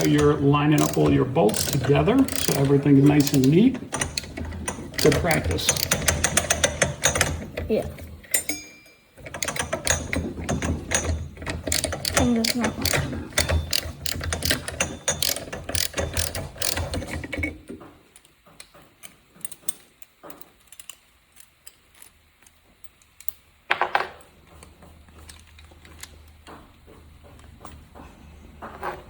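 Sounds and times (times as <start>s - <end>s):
socket ratchet clicking: 0.0s - 7.5s, 8.2s - 17.5s
metal rattle: 0.0s - 17.9s.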